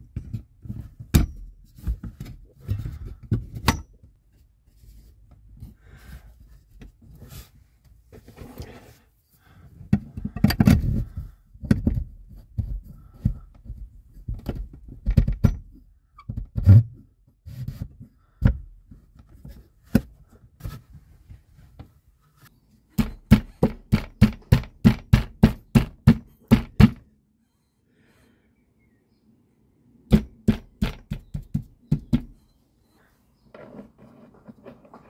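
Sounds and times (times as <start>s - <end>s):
knocks and thuds: 9.9s - 16.9s, 23.0s - 27.0s, 30.1s - 32.4s.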